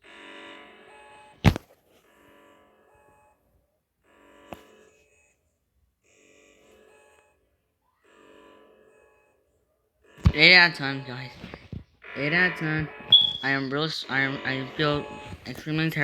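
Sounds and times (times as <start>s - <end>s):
electronic alert tone bursts: 12.2s - 15.2s.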